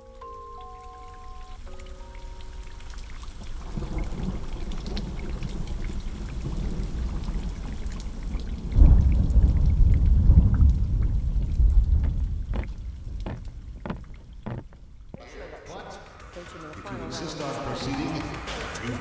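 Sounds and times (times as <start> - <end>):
faint crackles: 3.0 - 15.2.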